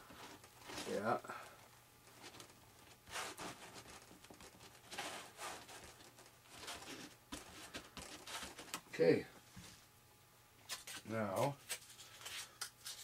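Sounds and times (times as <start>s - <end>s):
hands rubbing tape on foam: 2.2s - 8.8s.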